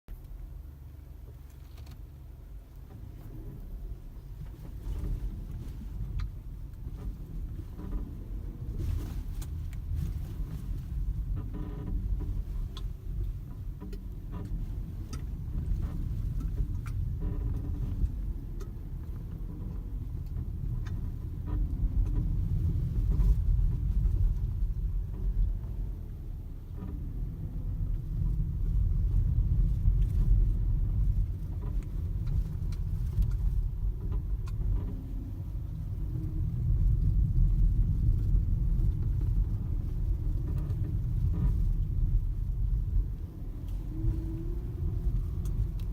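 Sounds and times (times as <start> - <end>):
low road and suspension rumble: 0.0 - 45.9
suspension squeaks and creaks: 6.9 - 24.3.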